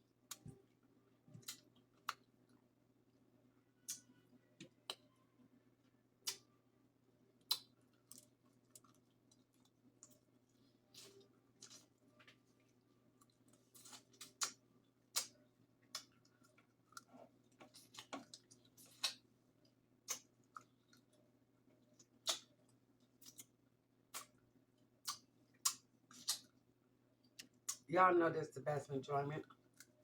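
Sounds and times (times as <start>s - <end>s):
quiet chewing: 0.2s - 2.7s, 7.4s - 27.9s, 29.4s - 30.0s
sharp wet clicks and smacks: 1.4s - 2.3s, 6.2s - 6.5s, 7.4s - 9.4s, 13.8s - 17.1s, 17.9s - 19.3s, 20.0s - 21.1s, 22.0s - 24.4s, 25.0s - 26.6s, 27.2s - 27.9s.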